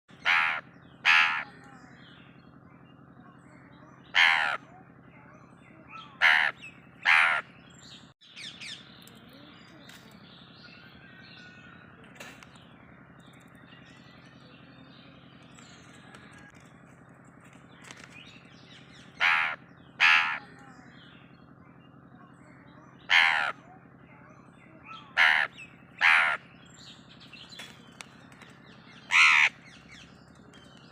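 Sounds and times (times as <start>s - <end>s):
parakeet imitating crow caws: 0.2s - 1.5s, 4.1s - 4.6s, 6.2s - 7.5s, 19.2s - 20.5s, 23.1s - 23.6s, 25.1s - 26.4s, 29.1s - 29.6s.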